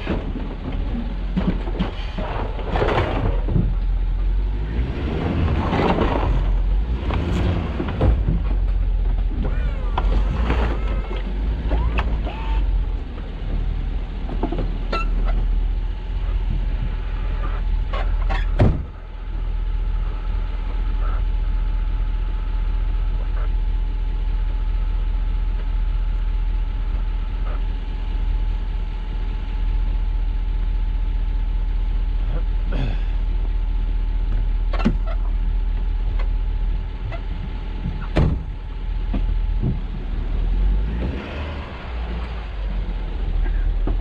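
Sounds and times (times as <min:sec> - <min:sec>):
sharp knocks and creaks: 0:00.0 - 0:04.0, 0:05.1 - 0:15.6, 0:16.3 - 0:19.0, 0:34.3 - 0:35.2, 0:37.0 - 0:40.1
truck engine rumbling: 0:00.0 - 0:44.0.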